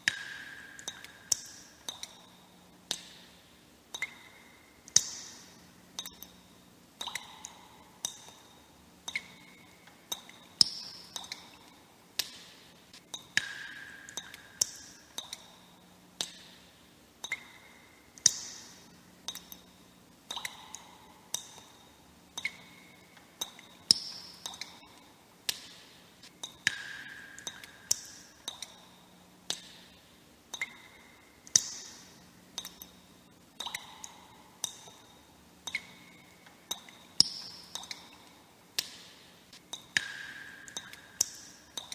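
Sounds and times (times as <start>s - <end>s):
water droplets plinking: 3.9s - 6.4s, 7.0s - 12.3s, 13.1s - 15.6s, 17.2s - 18.7s, 19.3s - 25.7s, 26.4s - 29.8s, 30.5s - 32.0s, 33.6s - 38.9s, 39.7s - 41.9s.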